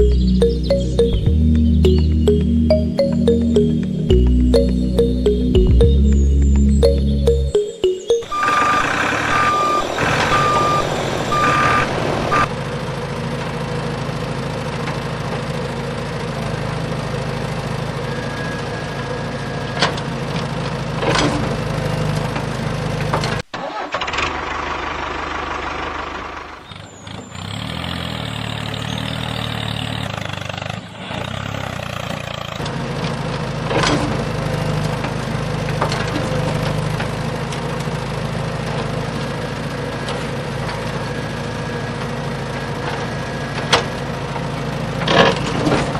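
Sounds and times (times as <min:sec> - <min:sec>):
short beeps: 0:00.0 - 0:12.5.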